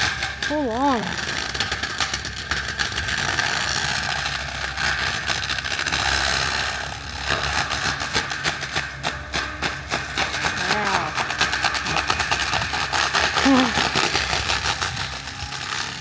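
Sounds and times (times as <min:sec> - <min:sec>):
engine running steadily: 0:00.0 - 0:16.0
wood cracking as shredded: 0:00.0 - 0:16.0
mulching head whine: 0:08.7 - 0:16.0.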